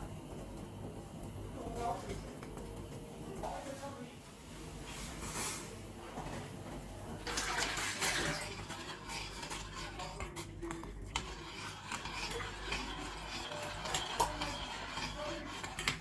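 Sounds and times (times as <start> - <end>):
water poured into a pot: 6.3 - 16.0
kitchen utensils clinking: 7.2 - 16.0.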